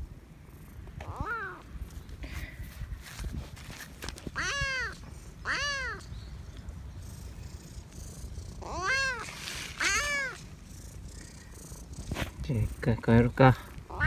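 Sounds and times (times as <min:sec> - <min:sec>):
kitten meowing: 0:04.4 - 0:06.0, 0:08.6 - 0:10.4.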